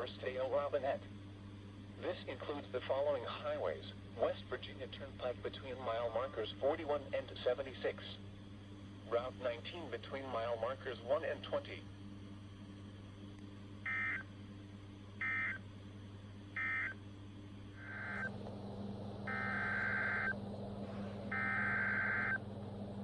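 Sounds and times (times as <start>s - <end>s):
low hum: 8.1s - 23.0s
two-tone modem squawk bursts: 13.9s - 14.3s, 15.2s - 15.6s, 16.6s - 17.0s, 17.8s - 18.3s, 19.3s - 20.4s, 21.3s - 22.4s.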